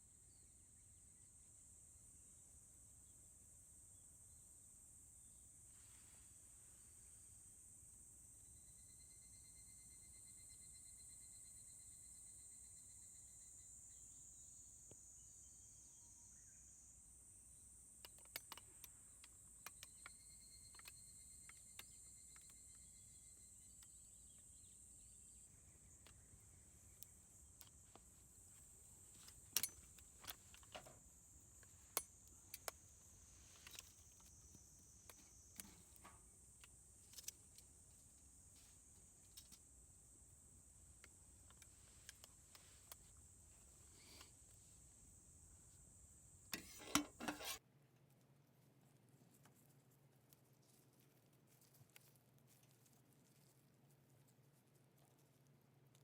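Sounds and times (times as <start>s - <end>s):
high-pitched insect chorus: 6.2s - 47.4s.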